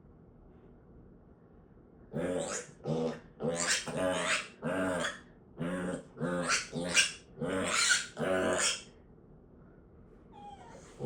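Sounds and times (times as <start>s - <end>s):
pig grunting: 2.1s - 8.9s.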